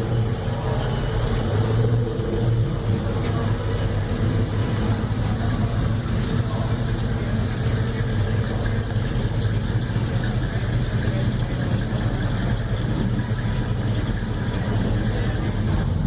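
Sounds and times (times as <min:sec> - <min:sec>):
car engine idling: 0:00.0 - 0:16.0.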